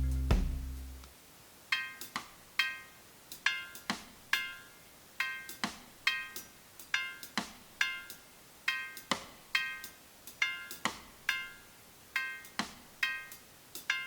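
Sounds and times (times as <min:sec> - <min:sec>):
sparse rhythmic music: 0:00.0 - 0:01.1.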